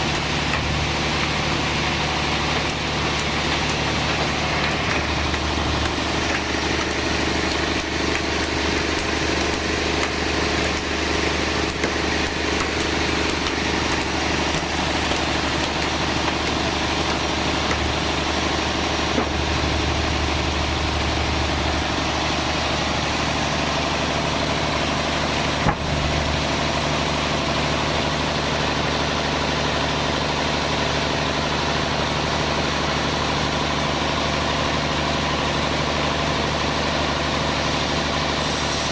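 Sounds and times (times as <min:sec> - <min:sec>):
band saw machinery humming: 0:00.0 - 0:38.9.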